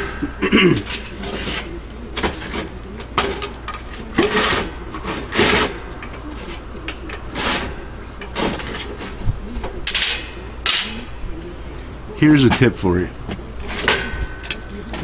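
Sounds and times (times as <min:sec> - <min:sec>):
steady low hum: 0:00.0 - 0:15.0
scraping and rubbing strokes: 0:00.8 - 0:02.8, 0:03.9 - 0:10.3.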